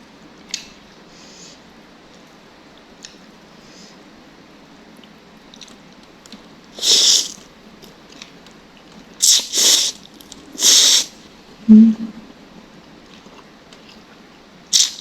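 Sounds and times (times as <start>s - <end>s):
hissing slurps while eating: 6.8s - 7.4s, 9.2s - 11.1s, 14.7s - 15.0s
brief low-pitched sound: 11.7s - 12.3s.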